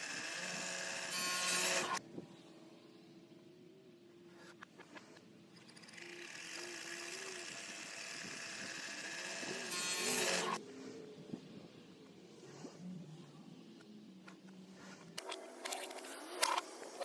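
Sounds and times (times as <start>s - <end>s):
reversed power tool motor whirring: 0.0s - 2.0s, 5.7s - 10.6s.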